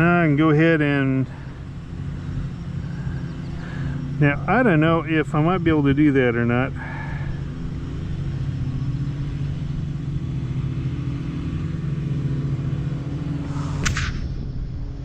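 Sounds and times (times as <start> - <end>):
quadcopter propellers humming: 0.0 - 15.0.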